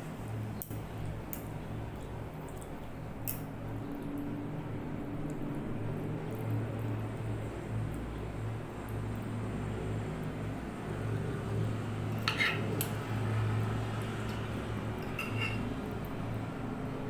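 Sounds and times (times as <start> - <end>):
cutlery clinking against dish: 12.2 - 13.0, 14.3 - 15.8.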